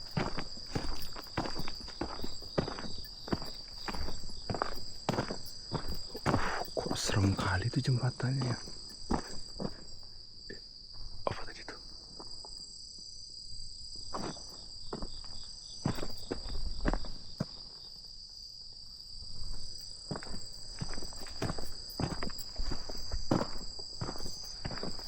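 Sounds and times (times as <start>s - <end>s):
footsteps walking: 0.0s - 7.3s, 19.4s - 25.0s
crickets chirping: 0.0s - 25.0s.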